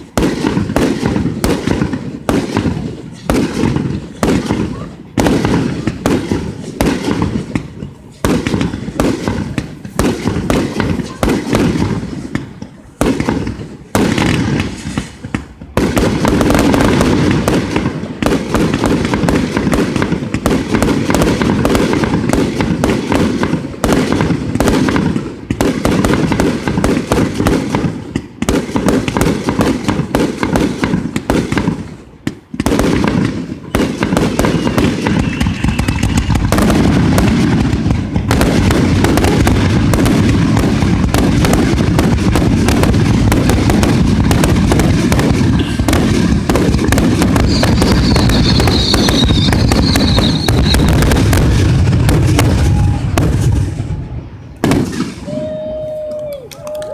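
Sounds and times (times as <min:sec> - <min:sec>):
fireworks crackling bangs: 0:00.0 - 0:56.9.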